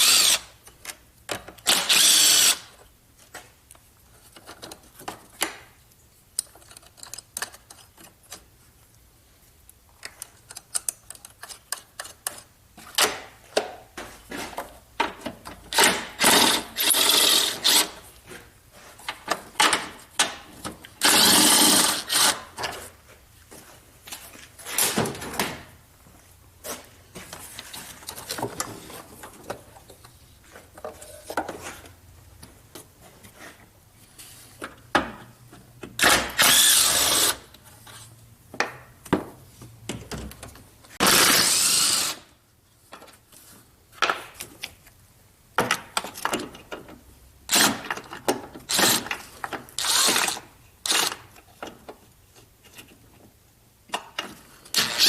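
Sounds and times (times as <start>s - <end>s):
hand tools and parts clinking: 6.3s - 8.5s.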